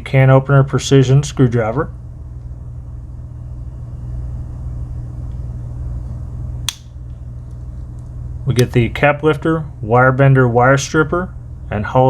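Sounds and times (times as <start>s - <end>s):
low rumbling hum: 0.0s - 12.0s
sharp click: 6.7s - 7.0s.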